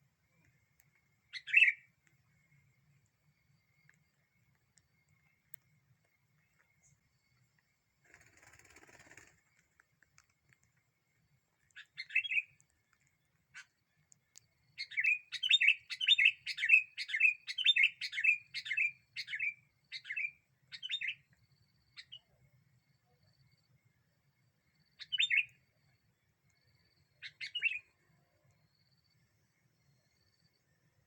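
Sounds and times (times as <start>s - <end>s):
bulbul calling: 1.3s - 1.9s, 11.8s - 12.6s.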